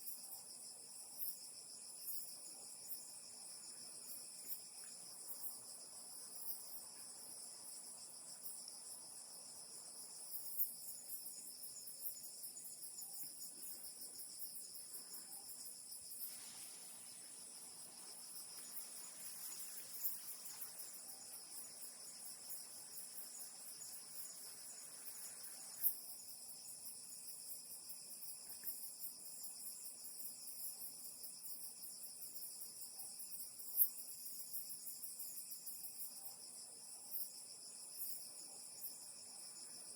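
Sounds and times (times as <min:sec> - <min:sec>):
insects trilling: 0:01.2 - 0:39.9
soft hiss: 0:13.3 - 0:26.4.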